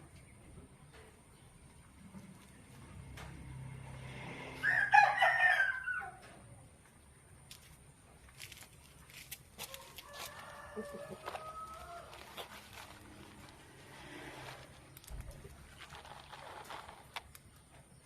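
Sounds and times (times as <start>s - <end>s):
rooster crowing: 4.5s - 6.4s, 9.7s - 12.5s.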